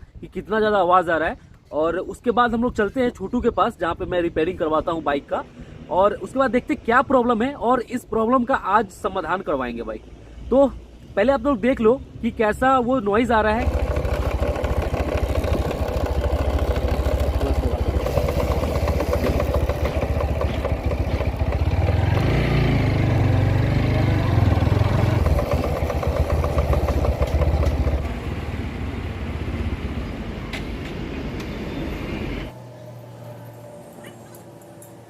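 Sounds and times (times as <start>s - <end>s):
motorcycle running: 13.2s - 30.7s.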